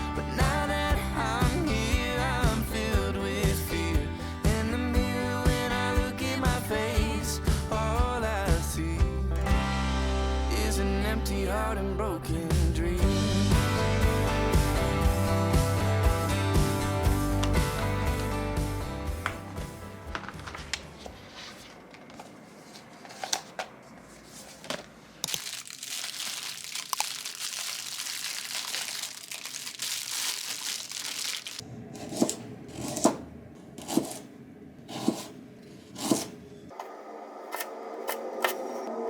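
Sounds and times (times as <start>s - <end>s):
crinkling: 20.1s - 31.6s.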